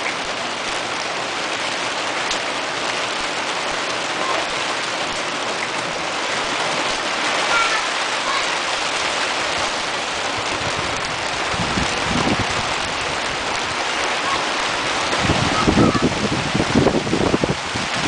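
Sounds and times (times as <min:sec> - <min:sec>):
rain hiss: 0:00.0 - 0:18.0
running water: 0:00.0 - 0:18.0
wind buffeting microphone: 0:09.4 - 0:18.0.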